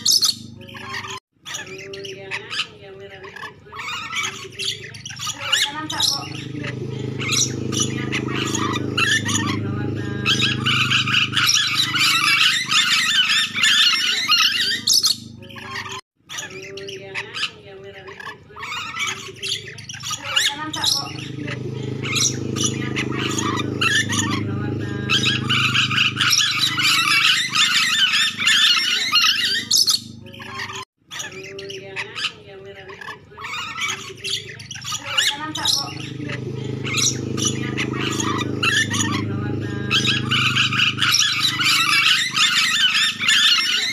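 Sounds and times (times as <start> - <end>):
lorikeets chattering and screeching: 0.0 - 43.9
steady low hum: 5.9 - 16.0, 20.8 - 30.8, 35.3 - 43.9.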